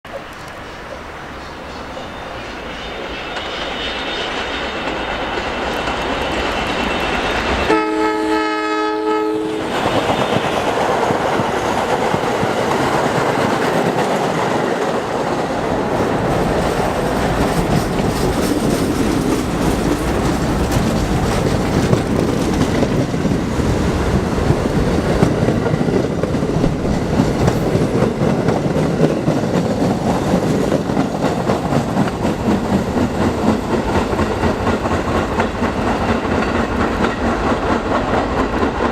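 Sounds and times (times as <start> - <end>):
train rumble: 0.1 - 38.9
train horn blast: 7.6 - 9.8
wheels clacking over rail joints: 9.7 - 38.9.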